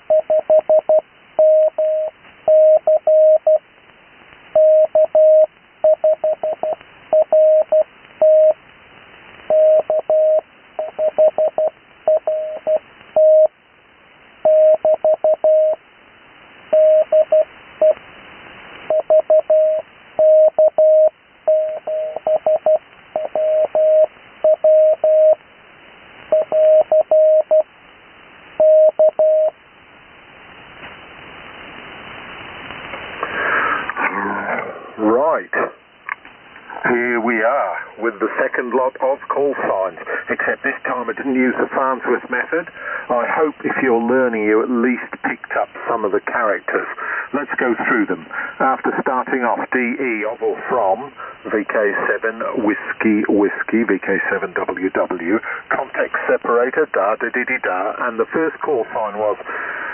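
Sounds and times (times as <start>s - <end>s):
morse code beeps: 0.0s - 3.6s, 4.6s - 8.6s, 9.5s - 13.5s, 14.5s - 15.8s, 16.7s - 18.0s, 18.9s - 25.4s, 26.3s - 27.7s, 28.6s - 29.5s
radio receiver hiss: 0.0s - 59.9s.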